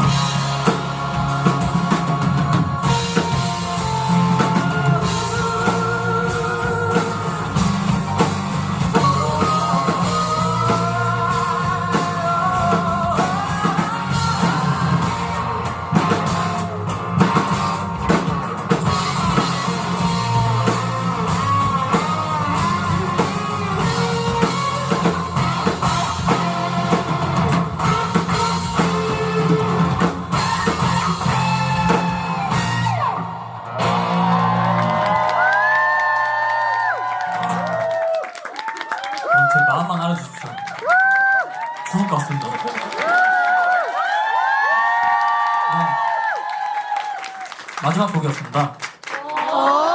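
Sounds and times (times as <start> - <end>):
live band playing: 0.0 - 49.0.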